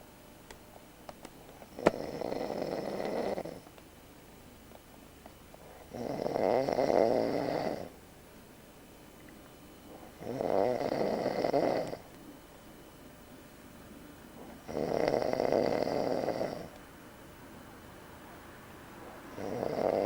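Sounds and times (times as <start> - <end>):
man snoring: 1.8 - 3.6, 5.9 - 7.9, 10.2 - 12.1, 14.6 - 16.8, 19.3 - 20.0.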